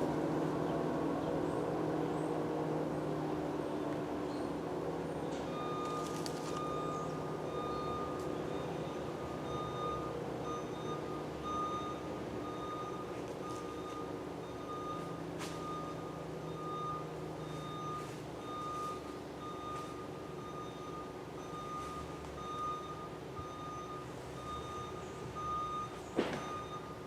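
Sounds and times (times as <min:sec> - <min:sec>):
high warning tone beeping: 0:05.5 - 0:27.0.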